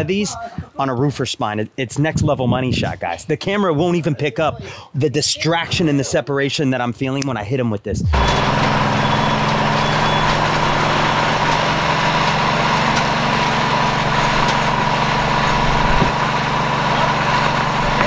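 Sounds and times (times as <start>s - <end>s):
thin high whine: 8.0s - 11.0s
engine idling: 8.0s - 18.0s.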